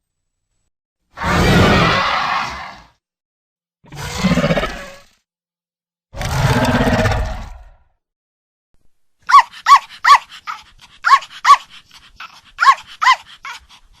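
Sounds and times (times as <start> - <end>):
dog barking: 9.2 - 14.0.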